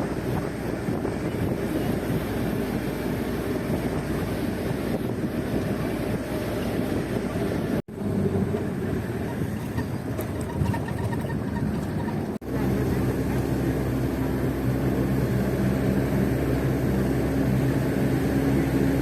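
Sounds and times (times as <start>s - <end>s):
vehicle engine and road rumble: 0.0s - 19.0s.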